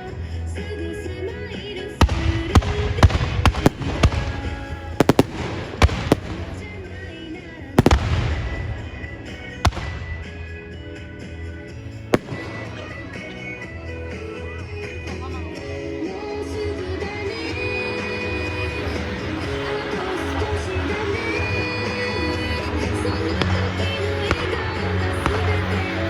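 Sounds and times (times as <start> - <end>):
music playing: 0.0 - 26.0
fireworks bangs: 2.0 - 10.6, 12.0 - 13.6, 17.0 - 26.0.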